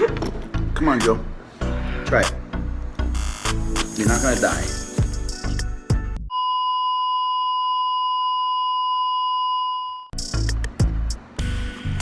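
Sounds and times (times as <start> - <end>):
background music: 0.0 - 6.3, 10.2 - 12.0.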